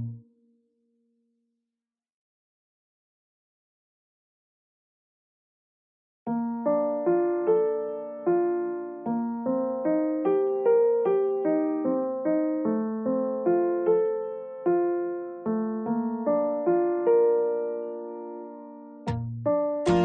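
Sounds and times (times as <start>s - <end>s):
slow solo piano piece: 6.3s - 20.0s.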